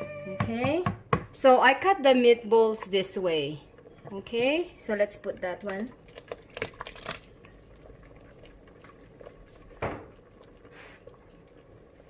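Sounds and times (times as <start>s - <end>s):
kitchenware knocking on pot: 0.3s - 1.4s.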